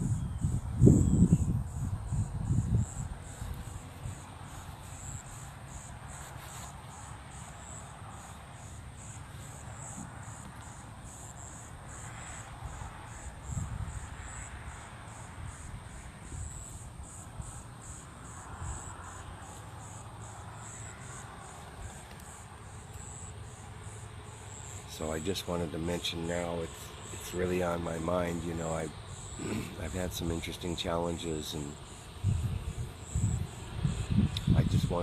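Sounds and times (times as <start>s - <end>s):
wind rumble on microphone: 0.0s - 5.8s, 12.4s - 19.0s, 32.1s - 35.0s
crickets chirping: 0.0s - 35.0s.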